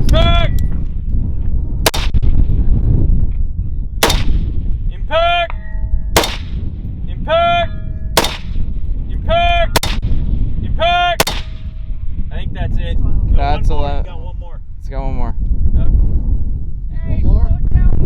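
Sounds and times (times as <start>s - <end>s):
wind rumble: 0.0s - 18.0s
rifle shots: 1.8s - 2.2s, 4.0s - 4.6s, 6.2s - 6.6s, 8.2s - 8.7s, 9.8s - 10.1s, 11.2s - 11.8s.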